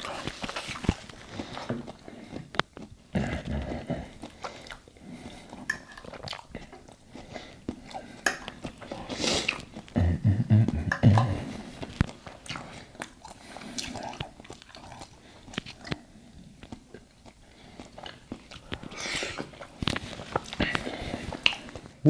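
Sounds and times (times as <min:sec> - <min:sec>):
chewing and mouth sounds: 0:00.0 - 0:22.0.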